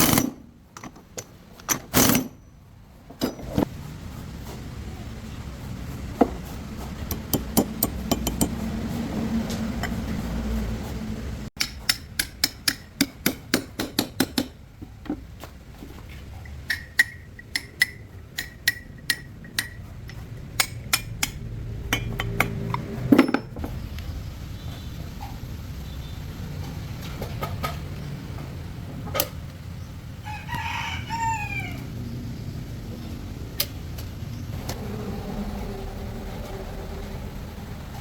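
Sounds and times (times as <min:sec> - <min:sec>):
hand tools clinking on metal: 0:16.4 - 0:21.4.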